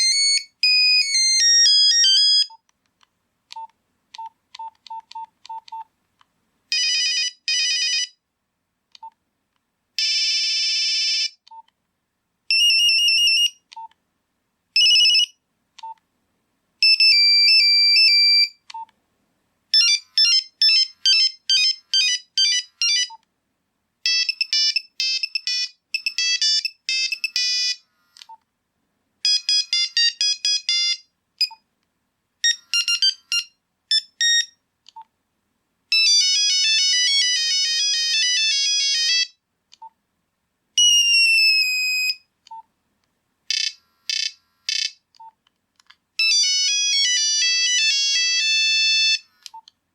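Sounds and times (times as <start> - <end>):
beeping ringtone melodies: 0.0 - 2.6, 14.8 - 15.3, 19.8 - 23.2, 24.1 - 27.8, 29.2 - 31.6, 32.4 - 34.5, 35.9 - 39.3, 46.2 - 49.3.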